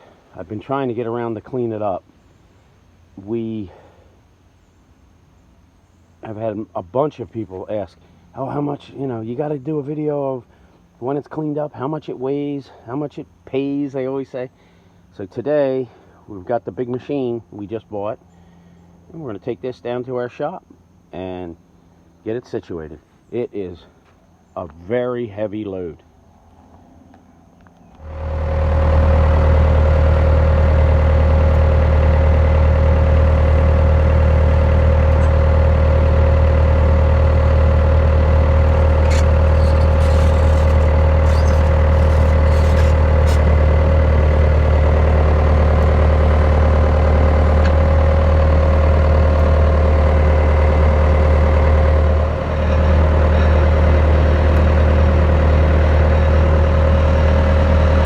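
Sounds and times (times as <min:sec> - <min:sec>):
vehicle engine running: 0:28.0 - 0:58.0
light ticks and rattles: 0:37.4 - 0:43.7.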